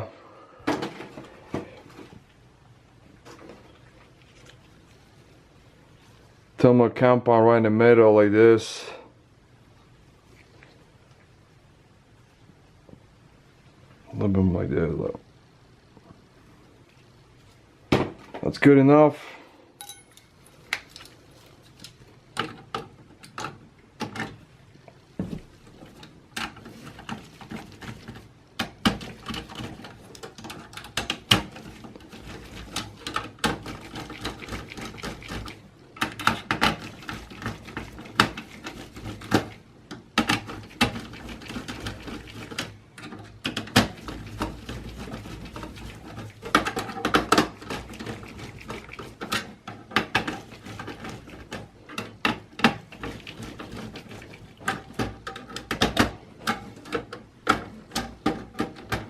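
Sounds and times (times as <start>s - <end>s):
rustling: 3.1s - 6.6s
computer parts clicking and knocking: 28.6s - 59.0s.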